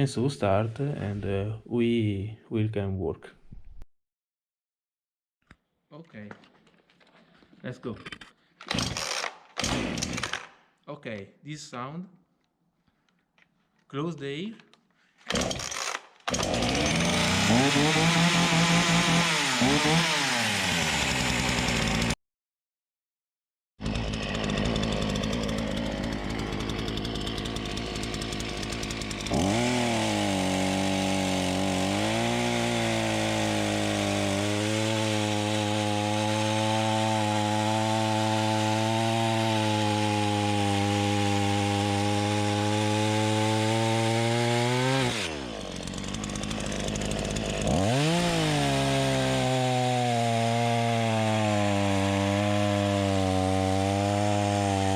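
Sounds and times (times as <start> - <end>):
chainsaw running at high throttle: 8.7 - 10.5, 15.3 - 22.2, 23.8 - 54.9.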